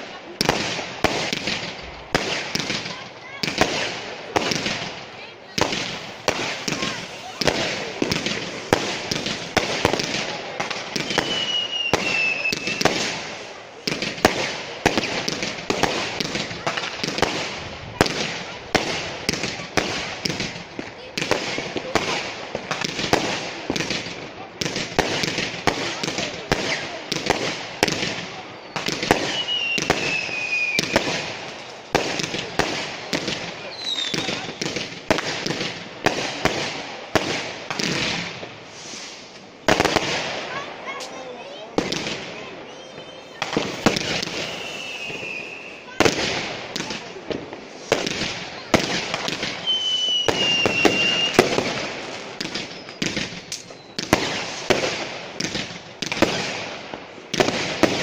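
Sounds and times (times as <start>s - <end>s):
firework bangs: 0.0s - 58.0s
firework crackling: 0.0s - 58.0s
falling firework whistle: 11.0s - 13.0s, 28.6s - 31.0s, 33.7s - 34.6s, 42.7s - 45.9s, 49.6s - 51.6s, 52.6s - 54.6s.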